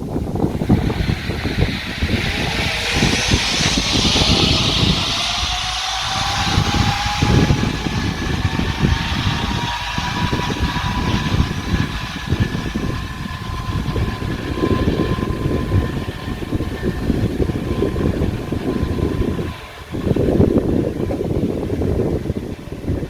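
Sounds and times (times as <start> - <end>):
faint engine-like drone: 0.0 - 23.0
wind buffeting microphone: 0.0 - 23.0.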